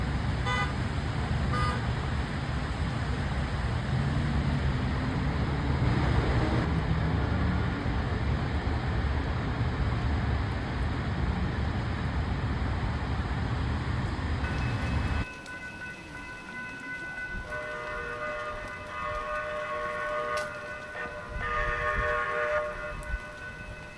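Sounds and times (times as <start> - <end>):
road traffic noise: 0.0 - 23.9
vehicle passing: 3.6 - 8.4.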